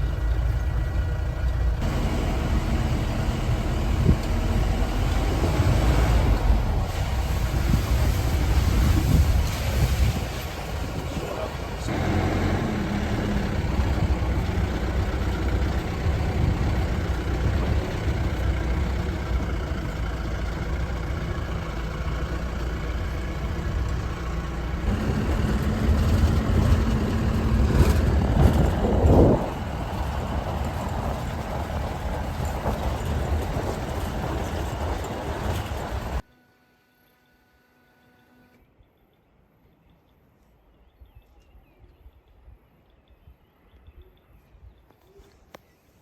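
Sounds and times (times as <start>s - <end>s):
vehicle engine running: 0.0s - 36.2s
traffic road noise: 0.0s - 36.3s.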